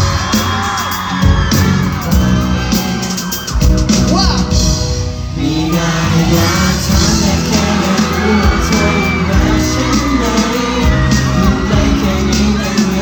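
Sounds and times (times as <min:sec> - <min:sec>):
audience cheering and shouting: 0:00.0 - 0:13.0
pop song with steady beat: 0:00.0 - 0:13.0
person singing: 0:05.4 - 0:13.0.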